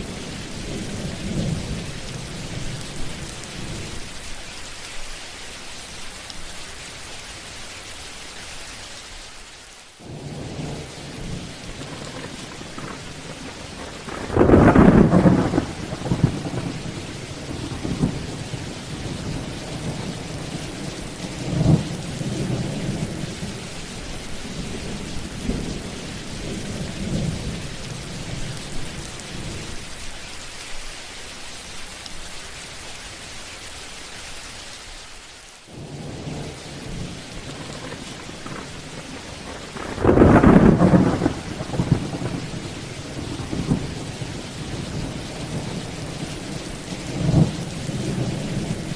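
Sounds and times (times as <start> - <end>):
steady rain: 0.0 - 48.9
rolling thunder rumbles: 10.0 - 29.8, 35.7 - 48.9
loud thunderclap: 11.8 - 20.5, 35.8 - 46.2.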